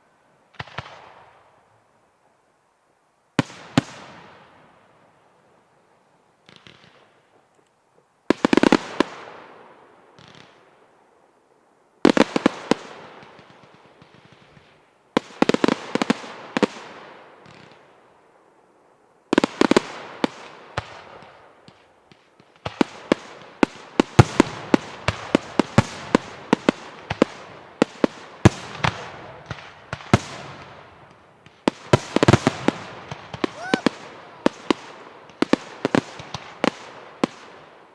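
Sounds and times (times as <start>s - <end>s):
fireworks bangs and crackle: 0.5s - 1.5s, 6.4s - 7.4s, 8.3s - 10.8s, 12.0s - 18.0s, 19.3s - 37.9s.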